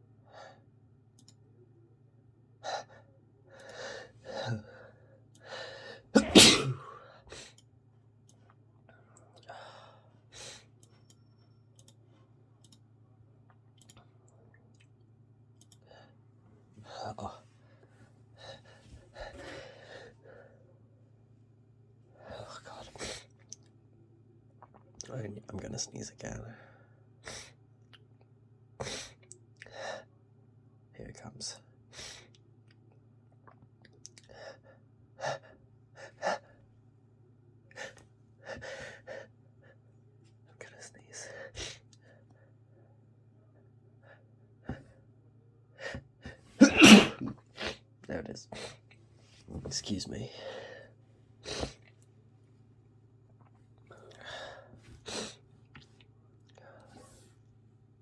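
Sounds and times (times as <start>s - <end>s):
low steady hum: 0.0s - 58.0s
faint clicks: 1.2s - 1.4s, 10.8s - 12.0s, 12.6s - 12.8s, 13.8s - 14.1s, 15.6s - 15.9s
person sniffing: 6.2s - 7.0s, 46.6s - 47.7s.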